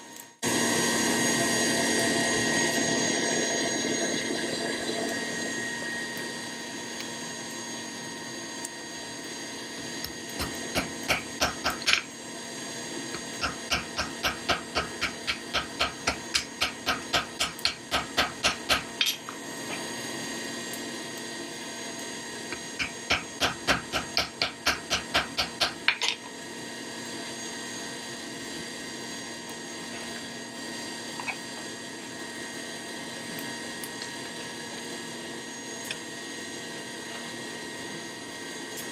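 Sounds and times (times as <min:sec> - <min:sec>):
steady background hum: 0:00.0 - 0:38.9
hammer striking hot steel: 0:10.4 - 0:12.1, 0:13.4 - 0:19.3, 0:22.7 - 0:26.1.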